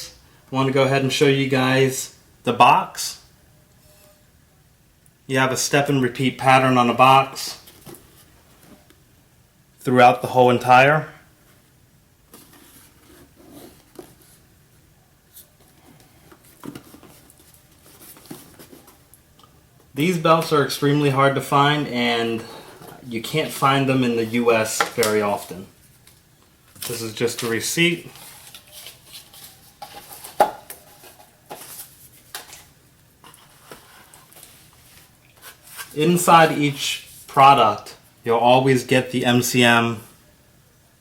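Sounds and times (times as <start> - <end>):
paper and packaging rustling: 15.3 - 19.2, 22.4 - 37.6.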